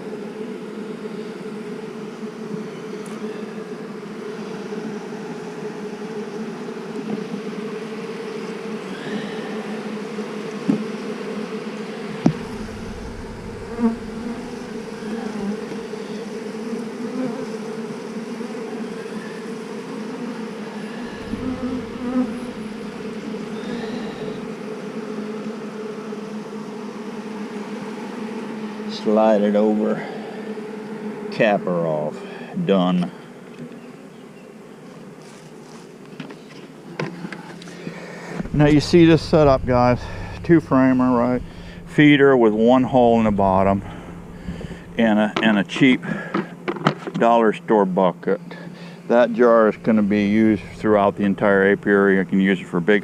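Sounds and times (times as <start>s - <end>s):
bees humming: 0.0s - 32.0s, 37.6s - 46.7s, 48.3s - 52.9s
sharp knocks: 12.3s - 15.8s, 38.3s - 45.6s.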